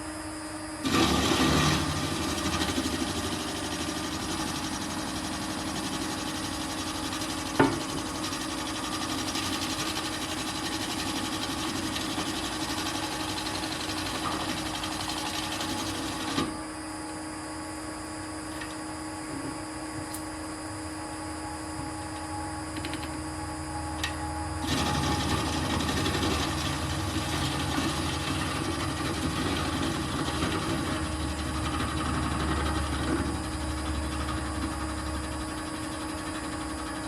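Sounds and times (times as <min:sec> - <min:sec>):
drill press motor humming: 0:00.0 - 0:37.0
drill cutter boring through metal: 0:00.8 - 0:16.6, 0:24.0 - 0:37.0.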